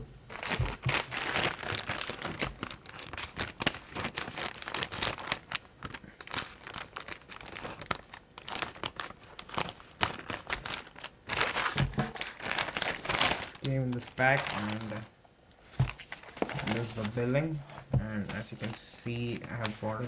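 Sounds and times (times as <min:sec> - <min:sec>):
packaging crinkling: 0:00.2 - 0:17.6, 0:18.3 - 0:20.0
packaging tearing: 0:00.3 - 0:15.0.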